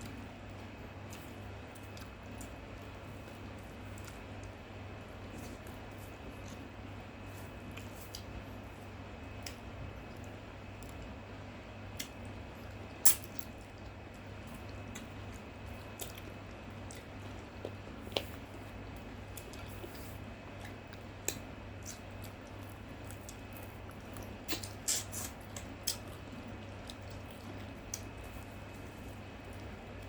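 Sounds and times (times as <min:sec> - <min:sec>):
steady low hum: 0:00.0 - 0:30.0
person eating with mouth sounds: 0:19.4 - 0:28.6.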